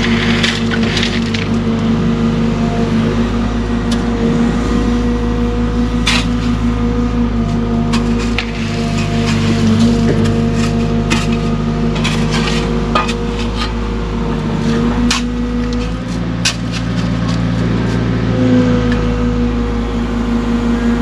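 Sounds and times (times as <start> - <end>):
bucket scraping soil and rock: 0.0 - 1.8, 8.0 - 13.8, 15.0 - 18.1
excavator diesel engine running: 0.0 - 21.0.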